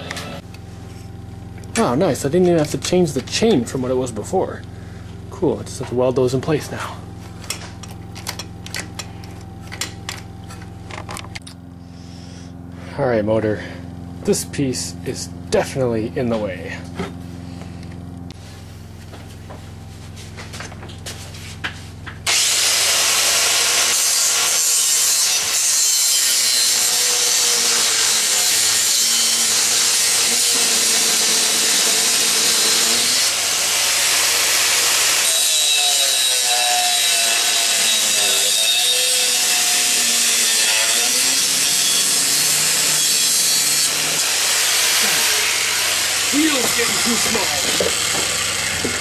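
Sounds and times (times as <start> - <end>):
angle grinder cutting metal: 22.2 - 49.0.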